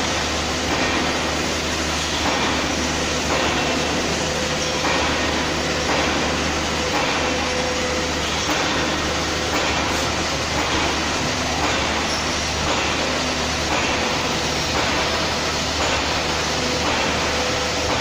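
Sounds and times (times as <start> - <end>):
machine hiss and hum: 0.0 - 18.0.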